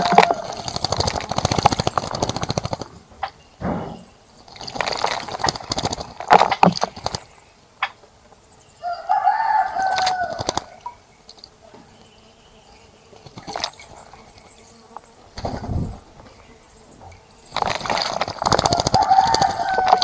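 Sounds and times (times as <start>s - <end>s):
rooster crowing: 0.0s - 0.8s, 8.8s - 10.8s, 18.5s - 20.0s
bird splashing and fluttering wings: 0.0s - 3.4s, 4.4s - 7.4s, 9.4s - 11.5s, 13.2s - 14.5s, 15.4s - 16.5s, 17.4s - 20.0s.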